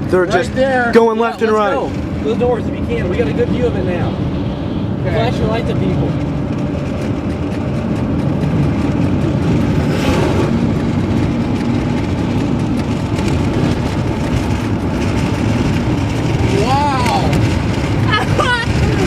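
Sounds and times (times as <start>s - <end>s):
vehicle engine and road noise: 0.0s - 19.0s.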